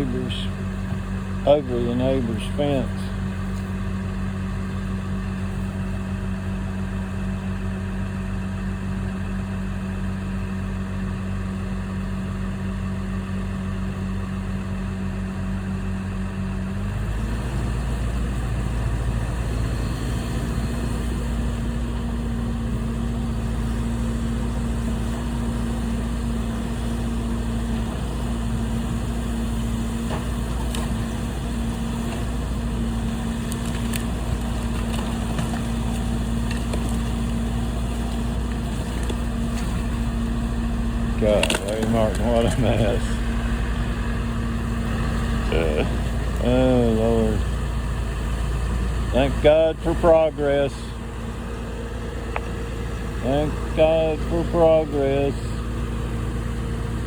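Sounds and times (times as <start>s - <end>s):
vehicle engine idling: 0.0s - 57.0s
steady hum: 17.8s - 57.0s.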